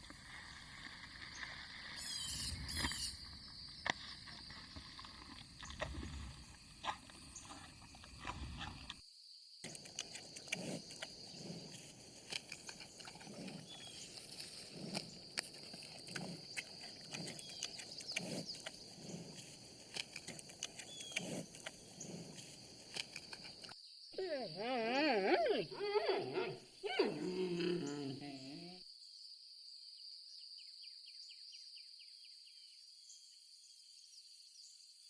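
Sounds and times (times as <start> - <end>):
panda munching bamboo: 9.6 - 23.8.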